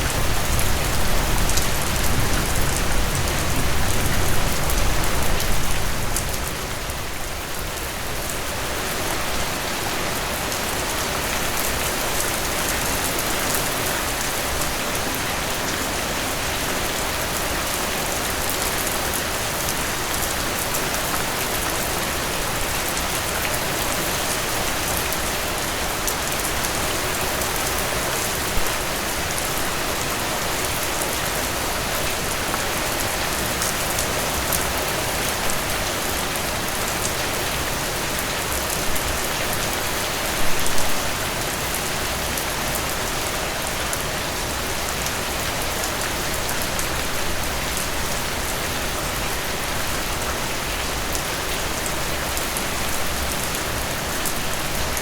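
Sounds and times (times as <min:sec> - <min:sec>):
rain pattering on surfaces: 0:00.0 - 0:55.0.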